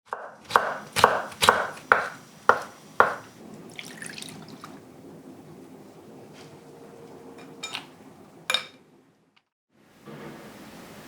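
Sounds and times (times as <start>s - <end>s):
knife chopping on cutting board: 0.1s - 3.3s.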